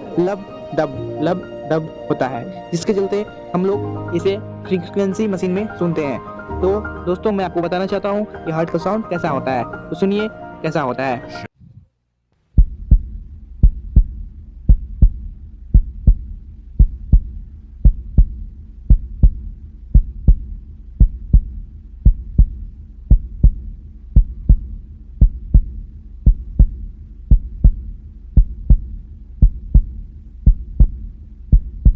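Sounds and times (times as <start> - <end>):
heartbeat lub-dub: 12.6 - 31.9
low steady rumble: 12.6 - 31.9.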